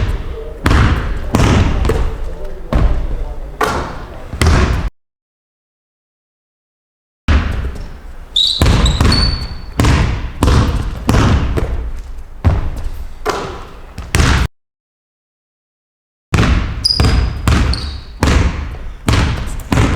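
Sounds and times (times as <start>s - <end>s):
basketball bouncing on court floor: 0.0s - 4.9s, 7.3s - 14.5s, 16.4s - 19.9s
sneaker squeaks: 7.5s - 14.4s, 16.8s - 19.9s.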